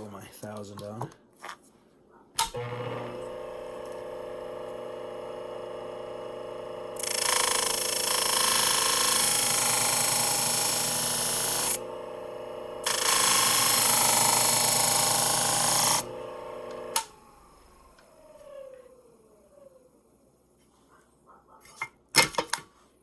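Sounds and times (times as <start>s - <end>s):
motor humming: 2.5s - 19.9s
blade grinding on sharpener: 6.9s - 11.9s, 12.8s - 17.0s.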